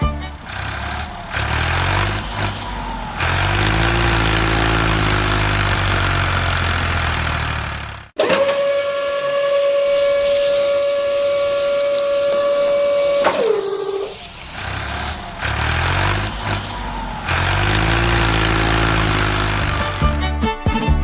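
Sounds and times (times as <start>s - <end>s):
truck engine revving: 0.0s - 20.5s
truck whistle with hiss: 8.4s - 16.6s.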